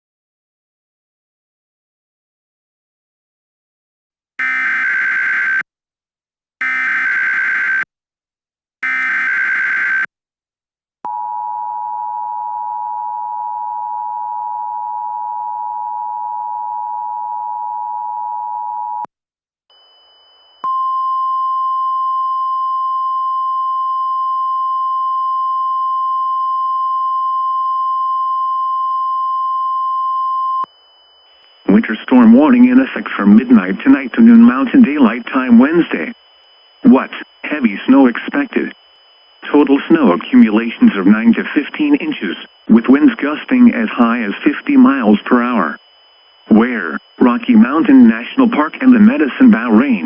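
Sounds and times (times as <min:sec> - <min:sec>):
steady alert tone: 0:04.4 - 0:05.6, 0:06.6 - 0:07.8, 0:08.8 - 0:10.1
two-tone attention signal: 0:04.4 - 0:05.6, 0:06.6 - 0:07.8, 0:08.8 - 0:10.1
warbling data tone bursts: 0:04.4 - 0:05.6, 0:06.6 - 0:07.9, 0:08.8 - 0:10.1, 0:31.6 - 0:50.0.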